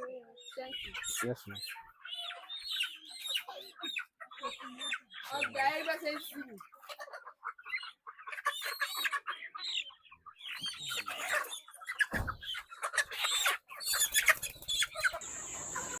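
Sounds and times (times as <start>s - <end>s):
hens squawking and clucking: 0.0s - 16.0s
wings flapping: 14.0s - 14.9s.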